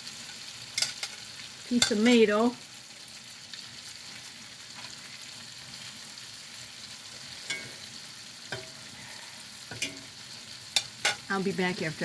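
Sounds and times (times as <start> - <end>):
meat sizzling in a pan: 0.0 - 12.0.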